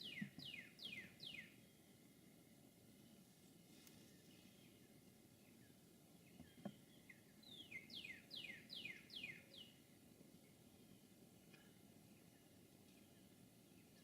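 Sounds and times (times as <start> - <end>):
songbird whistling: 0.0 - 1.6, 7.0 - 9.7
faint outdoor hiss: 0.0 - 14.0.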